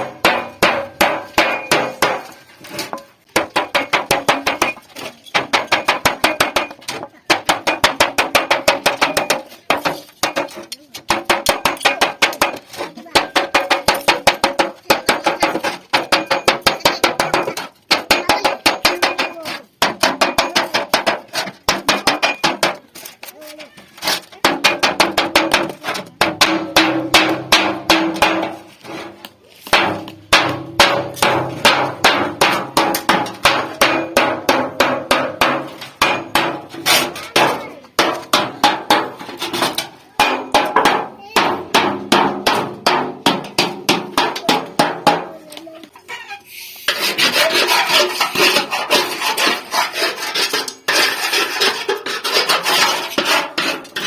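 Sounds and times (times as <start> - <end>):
hammer striking sheet metal: 0.0 - 4.8, 5.4 - 22.9, 24.4 - 45.4
metal being filed: 46.6 - 54.0.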